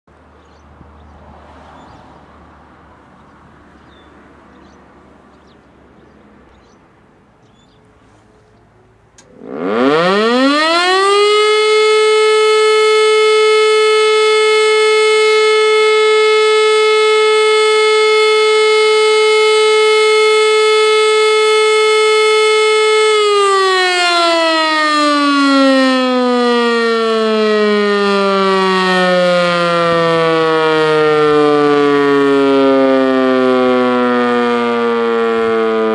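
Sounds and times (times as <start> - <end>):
fire siren howling: 9.2 - 35.9.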